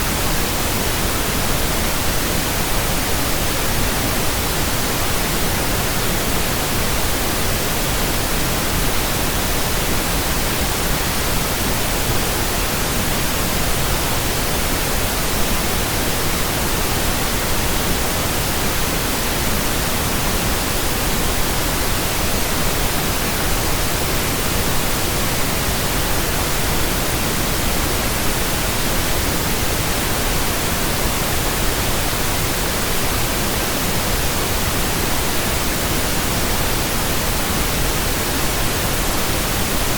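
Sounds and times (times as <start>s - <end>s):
steady pink noise static: 0.0s - 39.9s.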